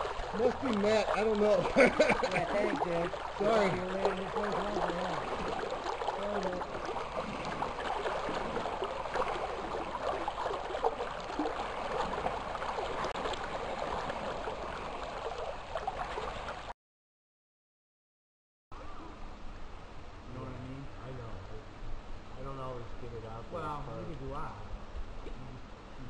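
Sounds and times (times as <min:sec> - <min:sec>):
river water rushing and babbling: 0:00.0 - 0:16.7.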